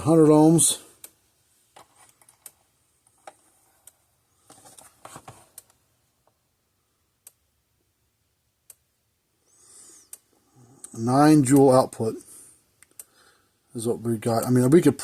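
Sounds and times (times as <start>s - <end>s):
faint clicks and light knocks: 1.0s - 6.4s.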